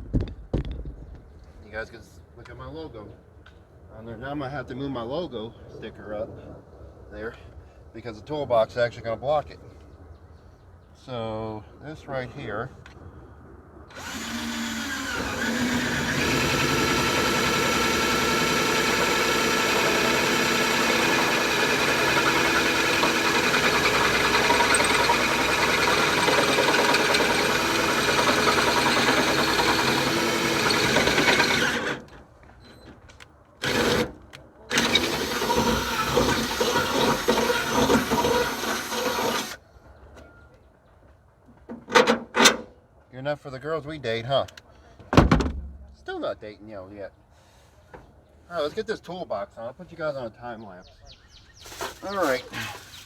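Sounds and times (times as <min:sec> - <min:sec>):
motor spinning: 0:13.9 - 0:32.1, 0:33.6 - 0:34.1, 0:34.7 - 0:39.6.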